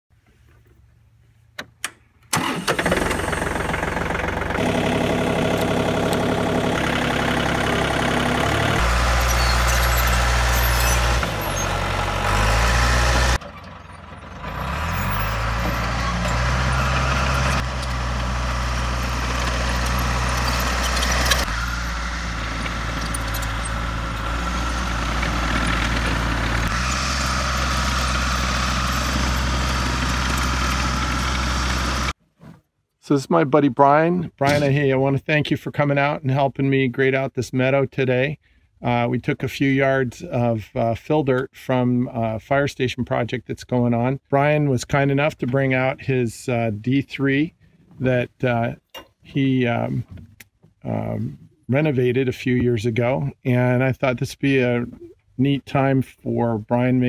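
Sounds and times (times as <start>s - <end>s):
diesel engine starting and running: 0.2s - 32.2s.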